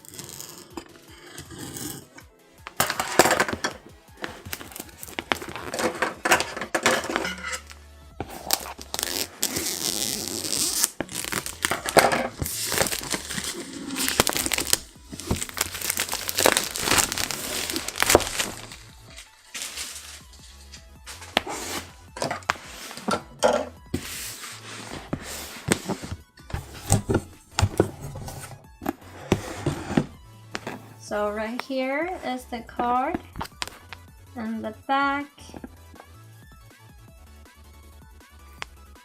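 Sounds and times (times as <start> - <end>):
background music: 0.0 - 39.0
packaging crinkling: 4.2 - 7.7, 8.3 - 23.0.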